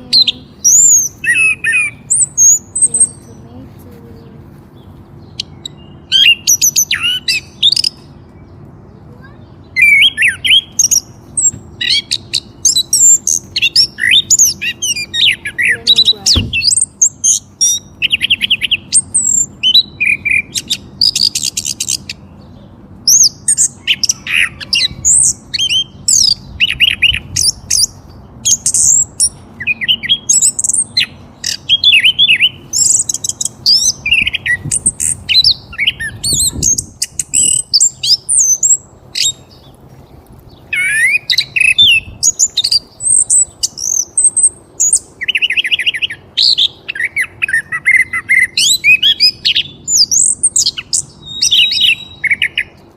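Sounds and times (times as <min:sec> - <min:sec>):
small birds chirping: 0:00.0 - 0:52.9.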